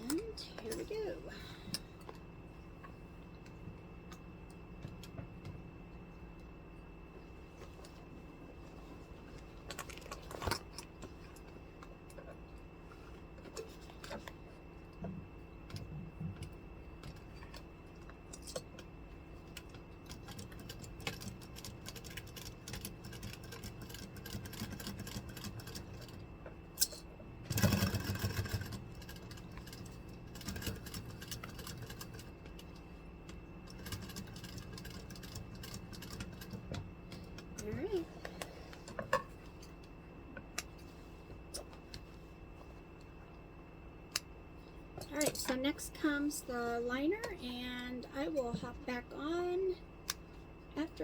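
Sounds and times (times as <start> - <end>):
sewing machine stitching: 27.5 - 32.3.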